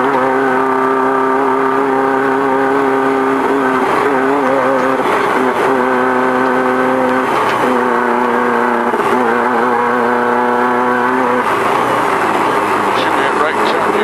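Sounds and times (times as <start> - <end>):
race car engine running hard: 0.0 - 14.0
road and wind noise: 0.0 - 14.0.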